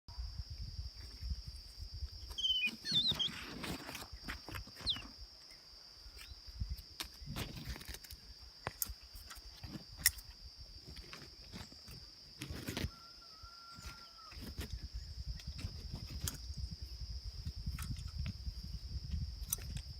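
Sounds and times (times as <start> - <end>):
small bird chirping: 2.2 - 7.5.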